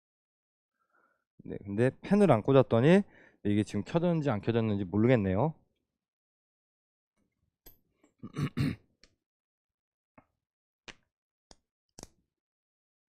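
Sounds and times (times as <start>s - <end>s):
person clearing throat: 8.2s - 8.8s.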